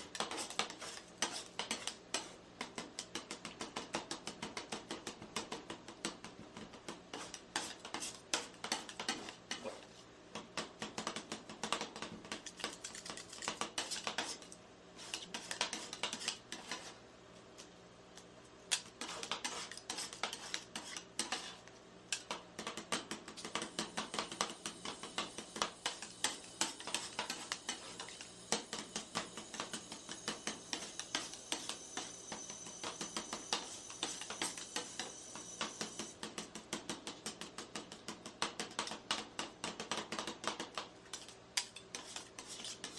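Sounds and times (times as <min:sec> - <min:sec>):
metal spatulas chopping on steel plate: 0:07.1 - 0:09.8, 0:18.7 - 0:42.9.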